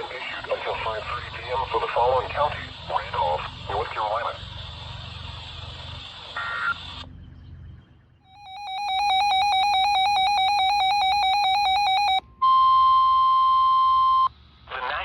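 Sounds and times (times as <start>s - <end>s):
two-pitch alternating electronic alarm: 8.2s - 14.3s
steady single beep tone: 8.2s - 14.4s.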